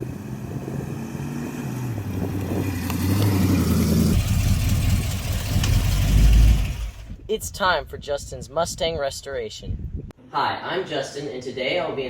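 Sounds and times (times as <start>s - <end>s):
car engine running: 0.0s - 7.2s.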